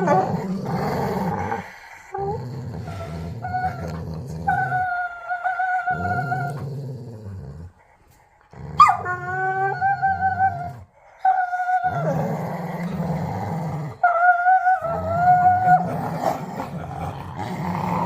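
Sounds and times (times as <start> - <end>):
dog play-growling and whining: 0.0 - 7.9, 8.5 - 18.0.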